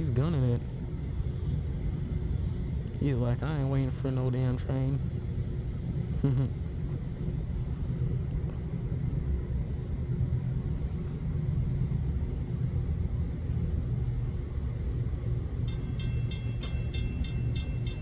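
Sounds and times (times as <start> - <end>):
train rumbling: 0.0 - 18.0
railroad crossing bell ringing: 15.6 - 18.0.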